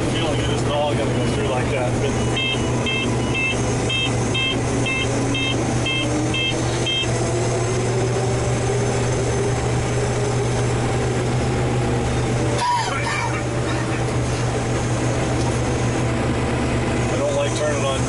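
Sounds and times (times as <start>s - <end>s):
engine drone in cab: 0.0s - 18.0s
high warning beeper: 2.1s - 7.2s.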